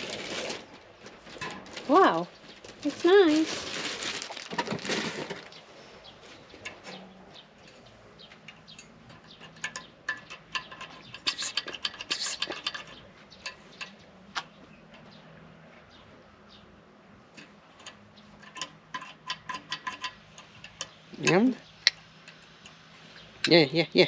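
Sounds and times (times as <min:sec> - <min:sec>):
clinks of hard parts handled: 0:08.4 - 0:14.0, 0:17.4 - 0:21.6.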